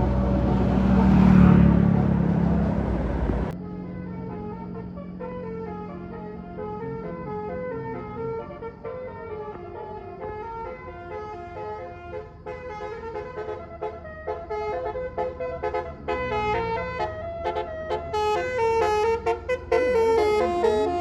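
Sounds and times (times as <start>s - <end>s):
bus engine rumbling: 0.0s - 21.0s
bus melody horn: 0.0s - 21.0s.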